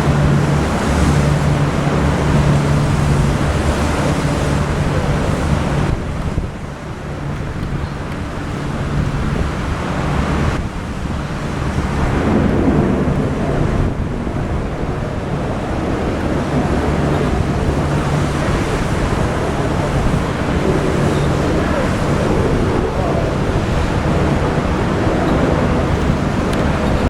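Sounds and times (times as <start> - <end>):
aircraft engines roaring: 0.0 - 27.0
wind noise on microphone: 0.0 - 27.0
low hum: 11.8 - 27.0.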